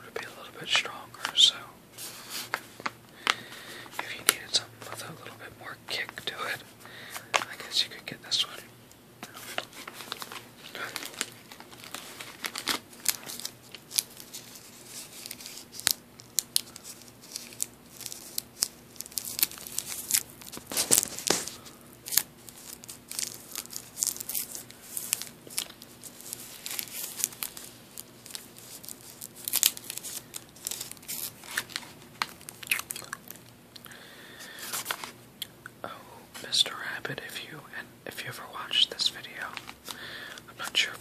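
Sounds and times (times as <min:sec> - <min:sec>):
plastic bags crinkling: 0:09.2 - 0:35.2.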